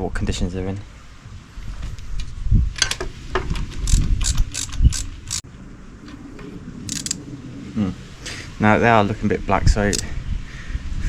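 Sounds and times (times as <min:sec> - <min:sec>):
ratchet wrench clicking: 0:03.8 - 0:05.4, 0:06.9 - 0:07.2.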